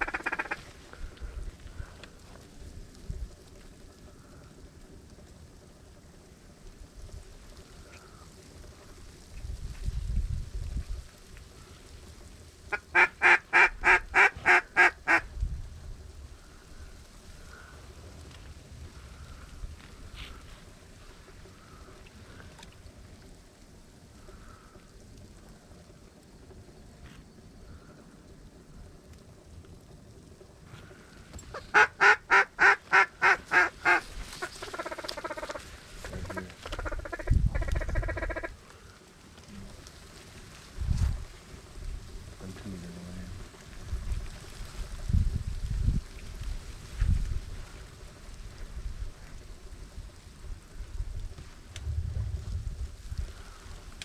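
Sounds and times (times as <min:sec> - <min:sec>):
duck call quacks: 0:00.0 - 0:00.6, 0:12.7 - 0:15.2, 0:31.5 - 0:35.6, 0:36.2 - 0:38.6
fast chattering duck feed calls: 0:00.0 - 0:00.7, 0:12.7 - 0:15.2, 0:31.5 - 0:38.6
wind rumble on microphone: 0:00.0 - 0:12.8, 0:13.4 - 0:31.8, 0:32.5 - 0:54.0.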